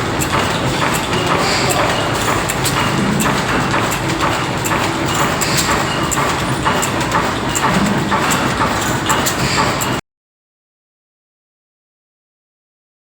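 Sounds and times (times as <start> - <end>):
diesel engine clattering: 0.0 - 10.0.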